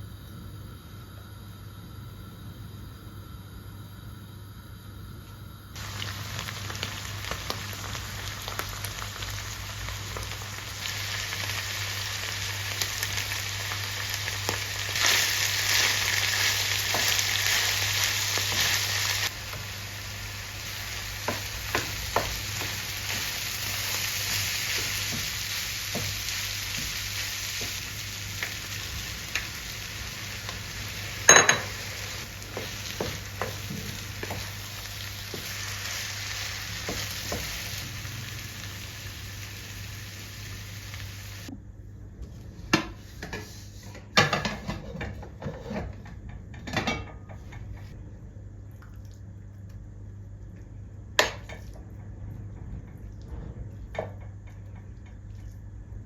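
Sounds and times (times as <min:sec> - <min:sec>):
food sizzling in a frying pan: 0:05.8 - 0:41.5.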